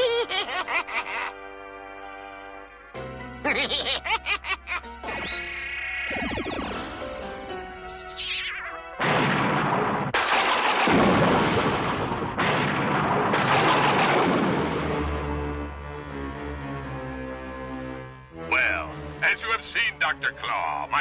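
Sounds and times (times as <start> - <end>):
music: 0.0 - 10.1, 14.2 - 21.0
falling-pitch whistles: 5.2 - 8.8.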